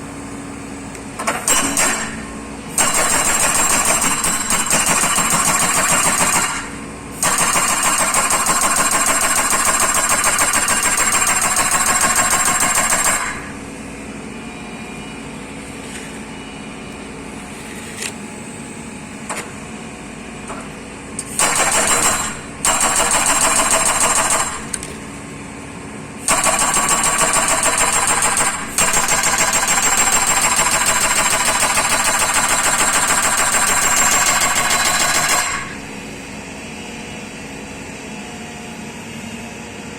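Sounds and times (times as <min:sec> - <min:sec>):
hydraulic breaker hammering: 0:01.2 - 0:13.6, 0:21.2 - 0:25.0, 0:26.2 - 0:35.9.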